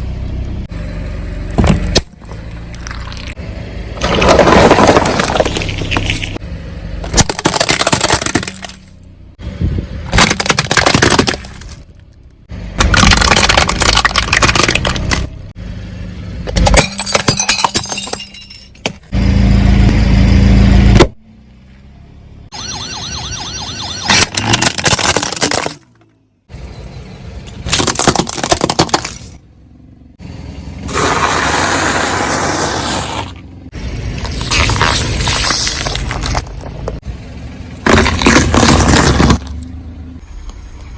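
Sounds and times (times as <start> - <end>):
tyre crushing bottles: 4.0 - 6.3, 7.1 - 8.8, 10.1 - 11.8, 24.1 - 26.0, 27.7 - 29.3, 37.8 - 39.6.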